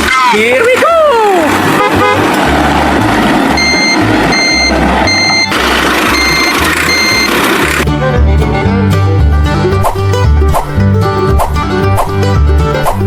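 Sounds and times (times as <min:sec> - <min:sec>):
low engine rumble: 0:00.8 - 0:12.8
reversing alarm beeping: 0:03.6 - 0:07.4.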